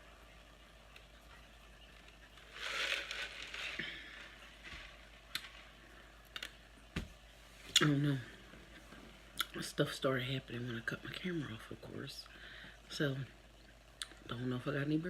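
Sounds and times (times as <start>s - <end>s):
rustling and crinkling: 0.9s - 7.8s.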